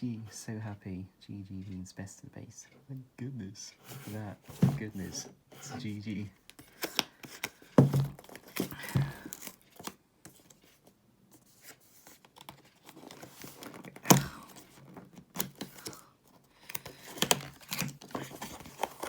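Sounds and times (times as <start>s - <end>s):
packaging rustling and tearing: 6.5s - 10.8s, 11.5s - 19.0s.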